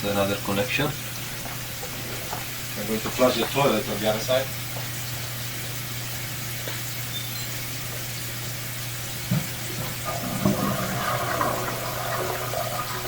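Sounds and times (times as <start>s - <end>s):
low electrical hum: 0.0s - 13.0s
water rushing down drain: 9.1s - 13.0s.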